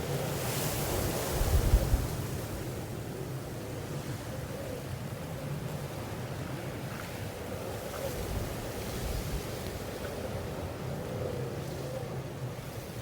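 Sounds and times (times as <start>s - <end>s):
wind noise on microphone: 0.0s - 2.6s.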